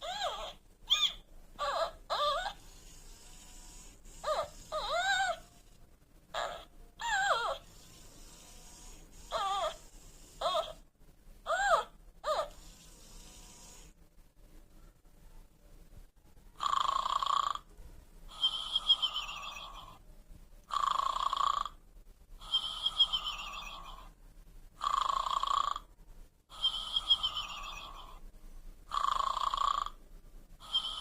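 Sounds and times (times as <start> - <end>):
toy snoring: 0.0 - 10.8, 11.5 - 14.0, 16.6 - 17.7, 18.3 - 20.0, 20.7 - 21.8, 22.4 - 24.1, 24.8 - 25.9, 26.5 - 28.2, 28.9 - 30.0, 30.6 - 31.0.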